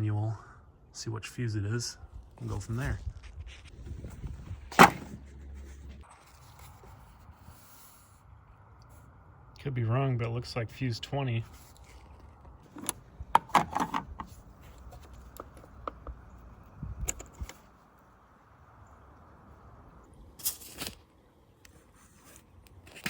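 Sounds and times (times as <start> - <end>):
plastic clicks and knocks: 12.7 - 14.3.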